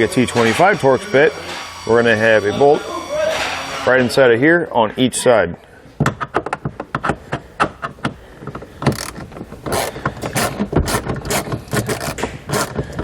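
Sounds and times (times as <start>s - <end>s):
hand ratchet clicking: 8.8s - 13.0s.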